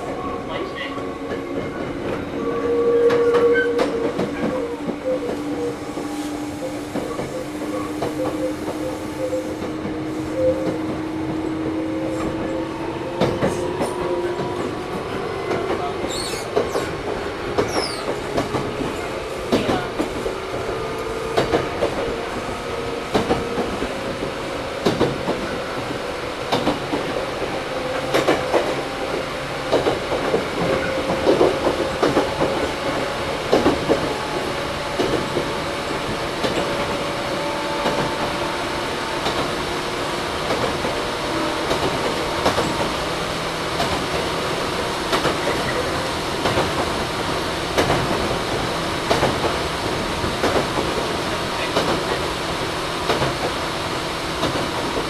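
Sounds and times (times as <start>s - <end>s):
wheels clacking over rail joints: 39.2s - 55.0s.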